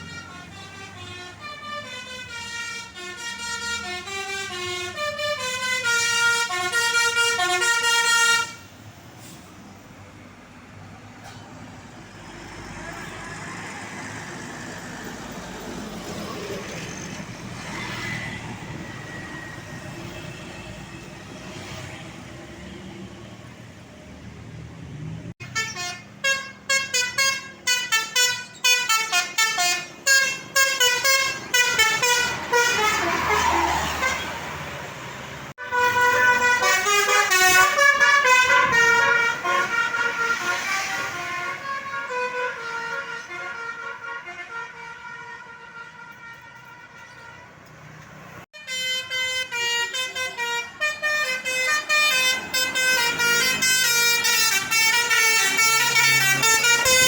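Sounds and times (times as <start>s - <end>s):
multi-tone bus horn tune: 0.0s - 9.4s, 25.4s - 34.7s, 35.6s - 47.7s, 48.5s - 57.0s
passing vehicles: 0.0s - 57.0s.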